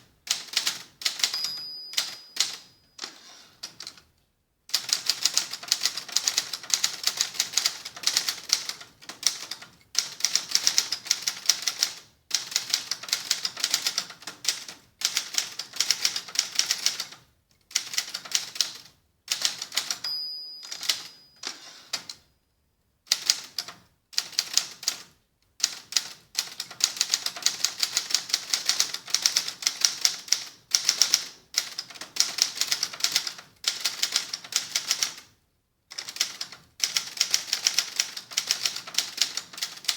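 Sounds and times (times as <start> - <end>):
typewriter margin bell: 1.2 - 3.4, 19.8 - 21.8.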